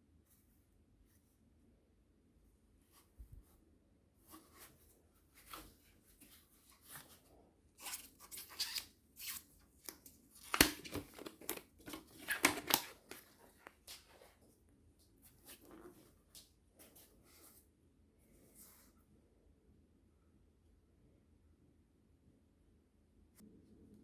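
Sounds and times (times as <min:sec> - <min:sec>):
packaging rustling: 0:07.8 - 0:14.2
packaging scraping: 0:10.4 - 0:13.6.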